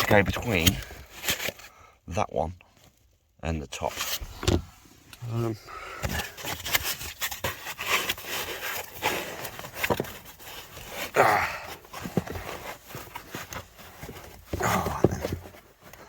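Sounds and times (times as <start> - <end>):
scraping and rustling: 5.9 - 16.0.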